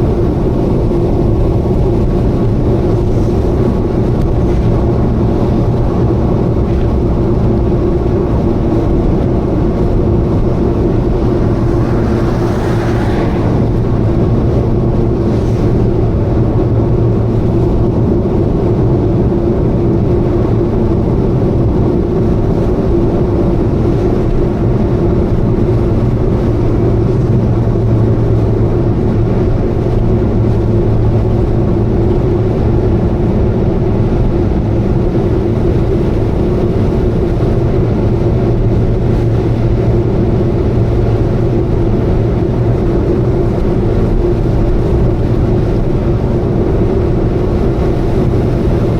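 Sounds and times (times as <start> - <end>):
car engine droning at cruise: 0.0 - 23.0.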